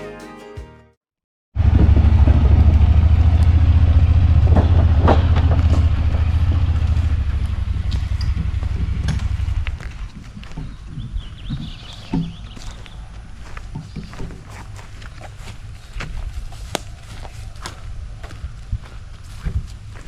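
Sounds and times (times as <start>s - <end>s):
vehicle engine pulsing: 1.6s - 10.8s.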